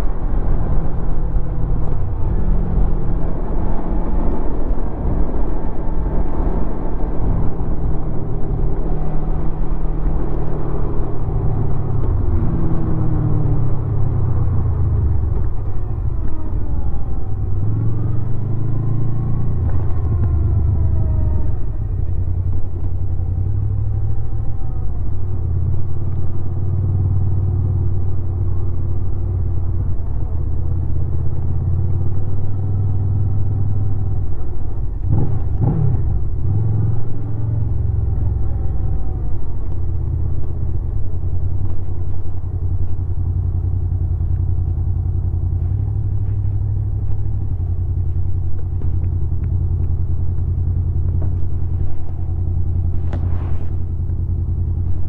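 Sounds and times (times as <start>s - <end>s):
motorcycle engine revving: 35.0s - 55.0s.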